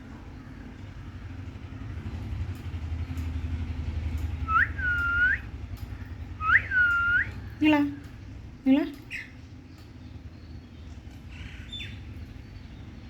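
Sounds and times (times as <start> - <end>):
cockatiel whistling: 4.4 - 5.4, 6.4 - 7.3.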